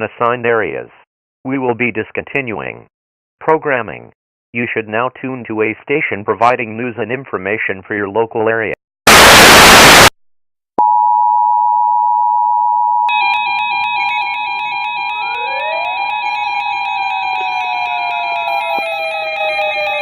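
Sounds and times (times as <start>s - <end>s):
two-tone alert signal: 10.8s - 20.0s
warbling electronic tones: 13.1s - 20.0s.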